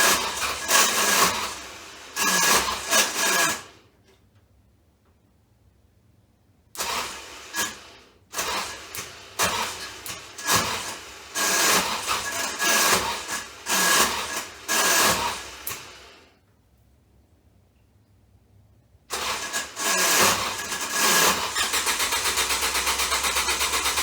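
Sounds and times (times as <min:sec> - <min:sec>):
car starter motor cranking: 0:08.4 - 0:16.0, 0:19.1 - 0:24.0.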